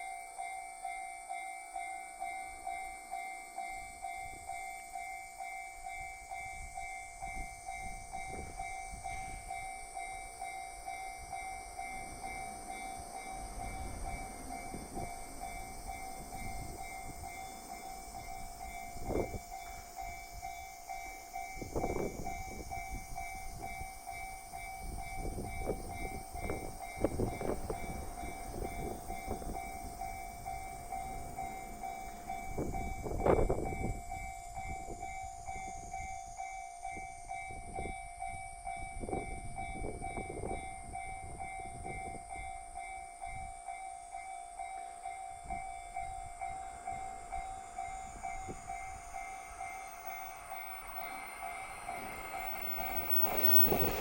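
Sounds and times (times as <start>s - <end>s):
level crossing warning bell: 0.0s - 54.0s
train rumble: 0.0s - 54.0s
train wheel clacks: 45.2s - 54.0s.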